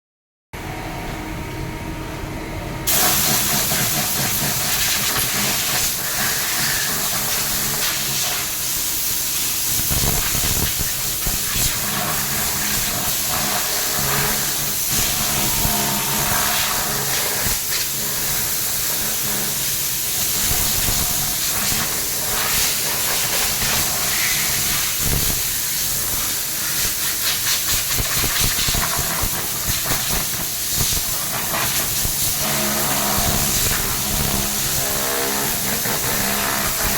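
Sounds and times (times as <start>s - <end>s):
compressed air hissing: 2.9s - 36.9s.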